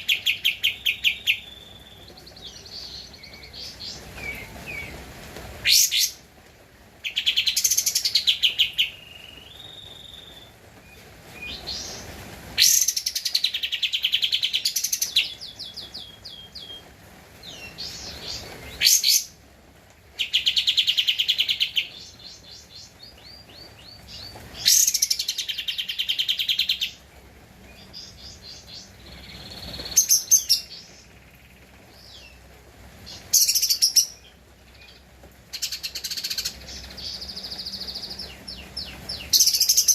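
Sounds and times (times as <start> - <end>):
bird singing trilled phrases: 35.6 - 39.9.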